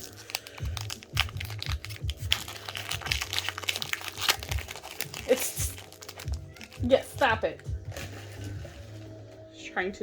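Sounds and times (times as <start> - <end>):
cards being handled: 0.0 - 6.8
foil wrapper crinkling: 0.0 - 9.1.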